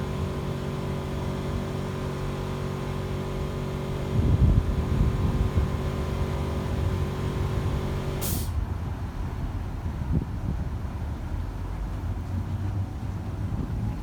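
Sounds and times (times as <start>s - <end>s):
boat engine rumbling: 0.0s - 8.6s
brief hiss: 8.2s - 8.6s.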